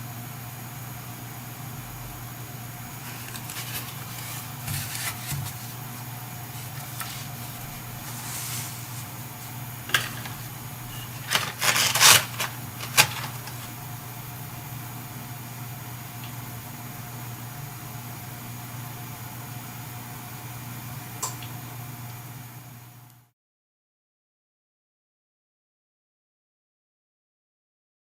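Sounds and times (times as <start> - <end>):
steady low hum: 0.0 - 23.2
packaging rustling: 2.9 - 13.8.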